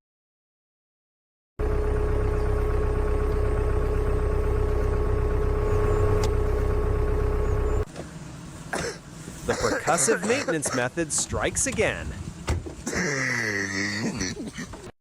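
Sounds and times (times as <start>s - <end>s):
engine starting and rumbling: 1.6s - 10.4s
steady engine whine: 1.6s - 14.9s.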